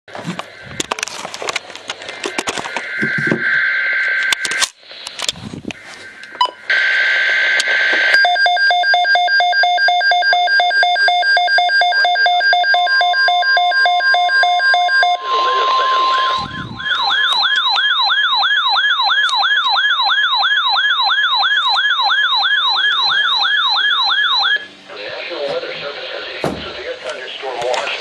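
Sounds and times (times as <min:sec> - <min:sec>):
rapid alarm beeps: 0:08.1 - 0:24.8
steady alert tone: 0:11.7 - 0:18.0
screechy data bursts from radio: 0:14.0 - 0:19.7.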